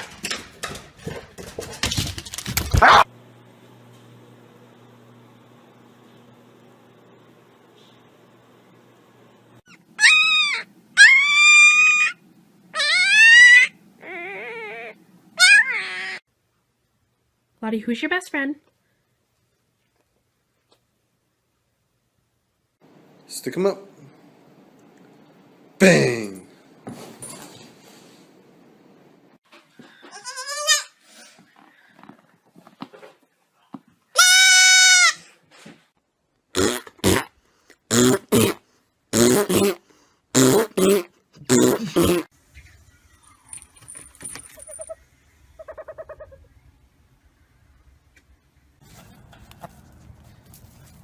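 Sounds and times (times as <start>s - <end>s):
pet animal crying: 9.7s - 16.2s, 44.5s - 45.0s, 45.6s - 46.5s.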